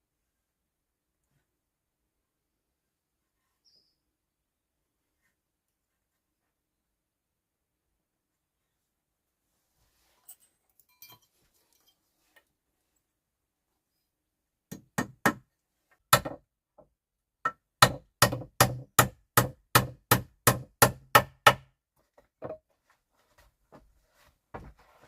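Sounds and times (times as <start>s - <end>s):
hard hammering knocks: 14.7s - 15.5s, 16.1s - 16.4s, 17.4s - 21.7s.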